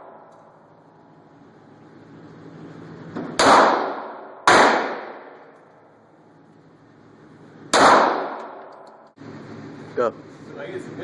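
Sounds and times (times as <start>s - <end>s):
pistol shots echoing: 3.4s - 5.6s, 7.7s - 8.9s.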